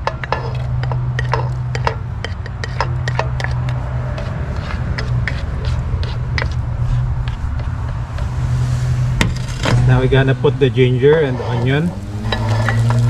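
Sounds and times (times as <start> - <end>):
steady low hum: 0.0 - 12.4
garlic frying in hot oil: 11.6 - 13.0.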